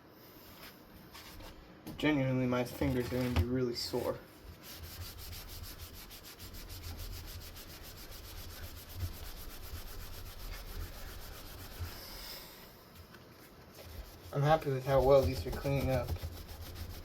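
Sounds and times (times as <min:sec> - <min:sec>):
wipe scrubbing fan blade: 0:03.9 - 0:12.6, 0:13.8 - 0:17.0.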